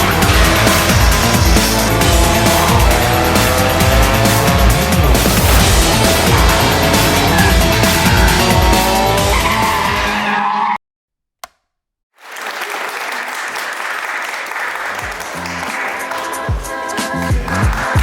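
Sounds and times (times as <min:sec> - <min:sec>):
music with beat: 0:00.0 - 0:09.8, 0:15.0 - 0:18.0
race car engine revving: 0:00.0 - 0:10.6.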